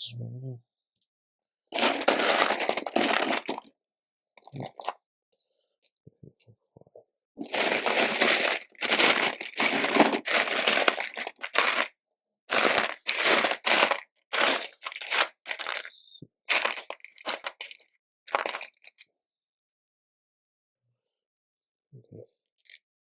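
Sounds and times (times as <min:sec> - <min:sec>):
plastic bricks rattling: 0:01.8 - 0:03.7, 0:07.4 - 0:11.9, 0:12.5 - 0:15.9, 0:16.5 - 0:18.8.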